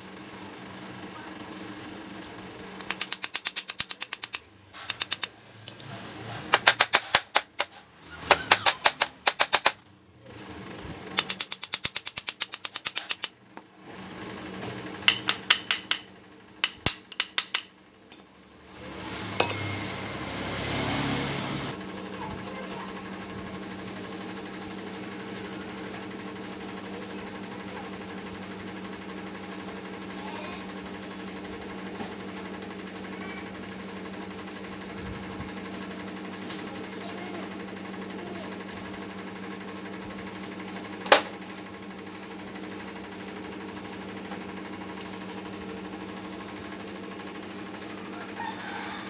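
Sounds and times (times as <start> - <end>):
machine hum: 18.6 - 22.2.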